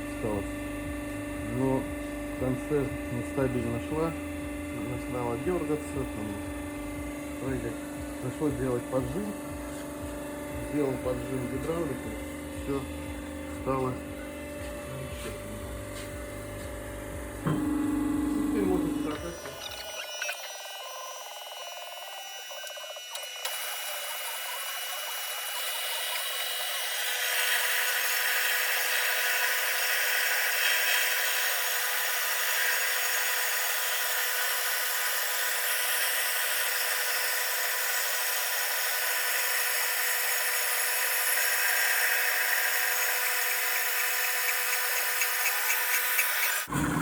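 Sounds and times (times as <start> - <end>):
band saw cutting: 17.4 - 47.0.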